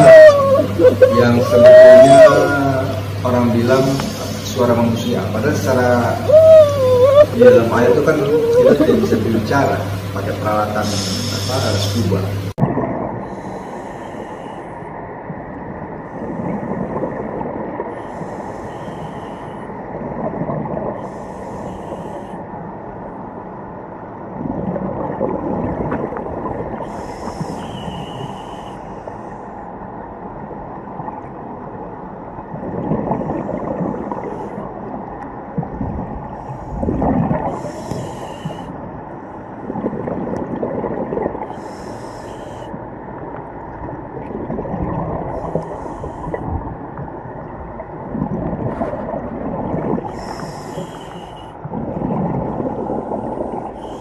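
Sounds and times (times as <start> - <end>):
regulator hissing inhales: 41.6 - 42.7, 50.2 - 51.5.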